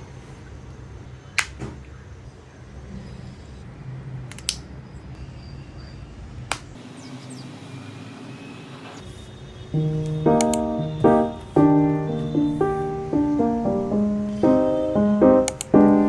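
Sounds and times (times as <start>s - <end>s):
sharp clicks: 9.8s - 12.7s, 15.4s - 16.0s.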